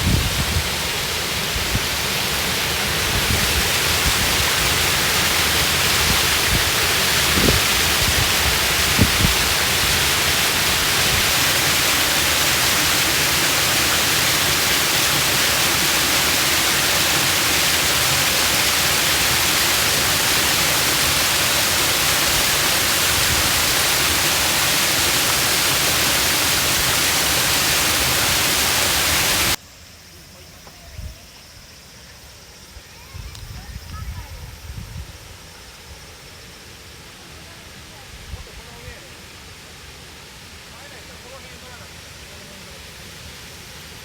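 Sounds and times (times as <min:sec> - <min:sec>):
waterfall rushing over rock: 0:00.0 - 0:29.6, 0:36.9 - 0:44.0.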